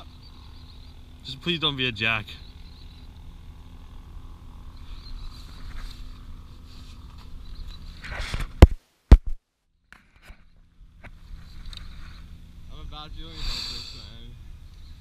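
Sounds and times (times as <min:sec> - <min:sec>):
boat motor idling: 0:00.0 - 0:08.2.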